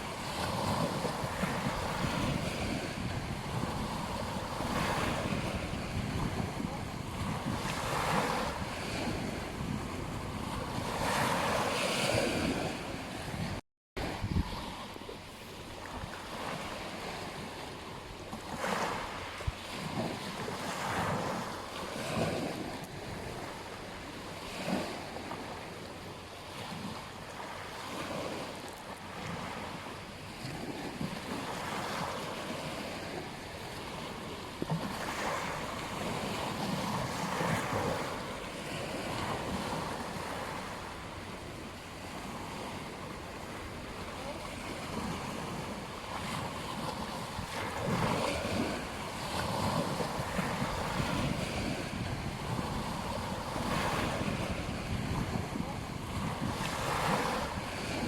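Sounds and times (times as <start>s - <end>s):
ocean waves washing on beach: 0.0s - 58.0s.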